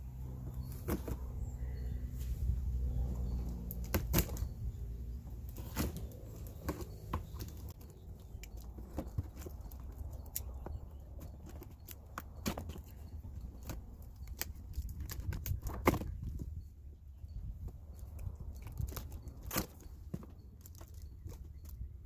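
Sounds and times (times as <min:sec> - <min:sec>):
cardboard and plastic packaging rustling: 0:00.6 - 0:01.3, 0:05.4 - 0:16.5, 0:18.0 - 0:21.9.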